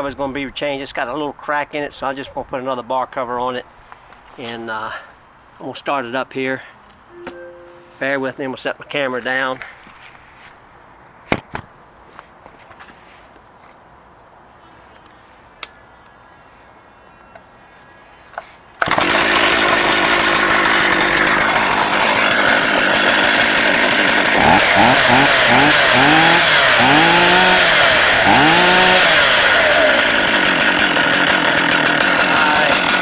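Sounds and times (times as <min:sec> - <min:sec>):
chainsaw running and revving: 0:18.8 - 0:33.0.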